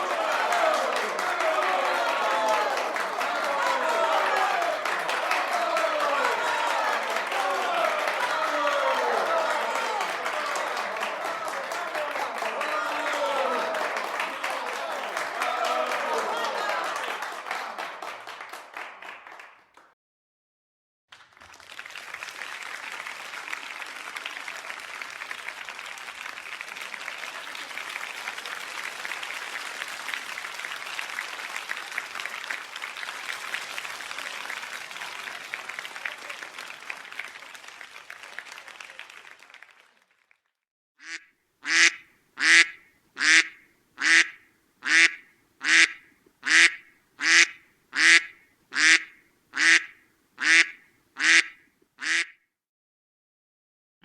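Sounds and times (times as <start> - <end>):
audience applause: 0.0 - 19.9, 21.1 - 40.5
duck quacking: 41.0 - 52.4.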